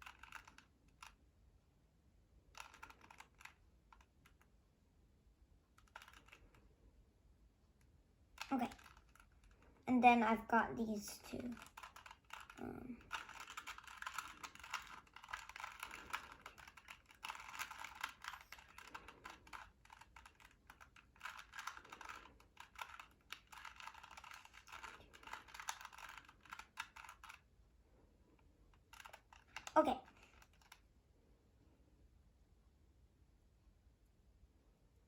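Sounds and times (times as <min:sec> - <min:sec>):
puzzle cube clicking: 0:00.0 - 0:01.2, 0:02.5 - 0:04.5, 0:05.7 - 0:06.6, 0:08.3 - 0:09.6, 0:11.2 - 0:27.5, 0:28.7 - 0:30.9.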